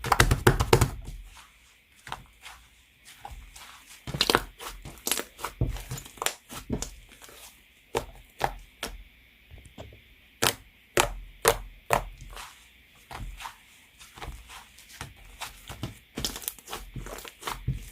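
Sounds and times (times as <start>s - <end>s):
slime popping and crackling: 4.1s - 6.8s.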